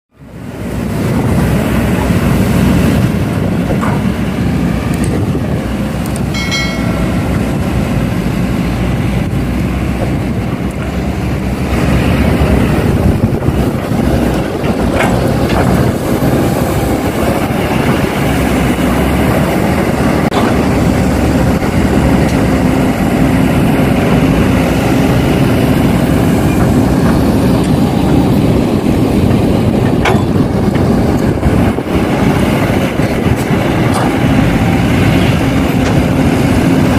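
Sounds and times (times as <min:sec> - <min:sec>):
heavy diesel engines running: 0:00.1 - 0:36.9
brief pitched tone: 0:06.4 - 0:07.8.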